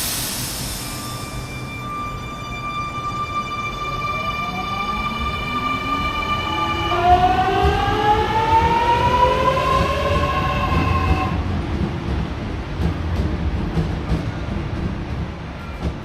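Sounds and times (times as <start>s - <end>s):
train traction motor whine: 0.0s - 11.5s
low rumble of train: 0.0s - 16.0s.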